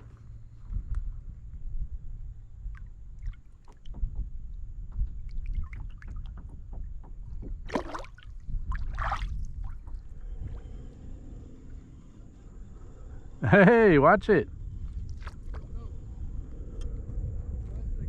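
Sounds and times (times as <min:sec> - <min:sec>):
water splashing around kayak: 0:02.6 - 0:04.2, 0:05.1 - 0:06.5, 0:07.6 - 0:10.7, 0:14.8 - 0:15.7.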